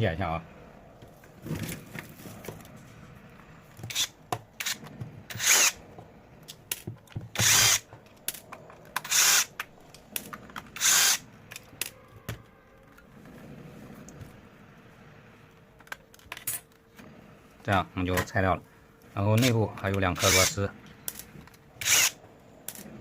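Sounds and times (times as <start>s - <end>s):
electric screwdriver running: 3.8s - 5.8s, 7.3s - 7.9s, 9.0s - 9.5s, 10.8s - 11.2s, 20.2s - 20.6s, 21.8s - 22.8s.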